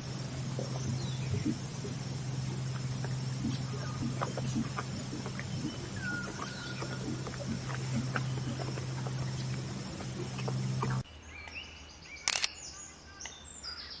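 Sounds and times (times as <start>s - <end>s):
steady low hum: 0.0s - 11.1s
sharp click: 12.3s - 12.5s.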